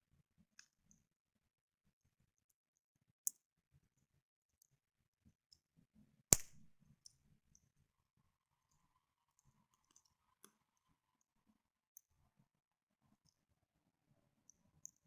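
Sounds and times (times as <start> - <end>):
campfire crackling: 6.3 - 6.7
loud wood snap: 6.3 - 6.7.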